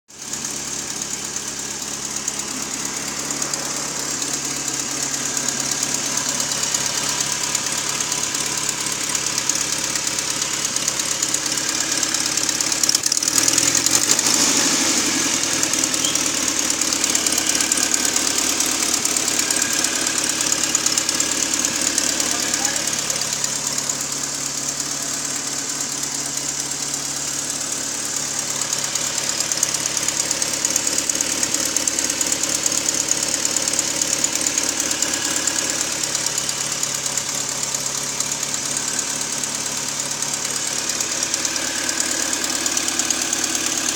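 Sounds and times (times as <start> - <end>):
car engine running: 0.1 - 43.9
strange engine noise: 0.2 - 43.9.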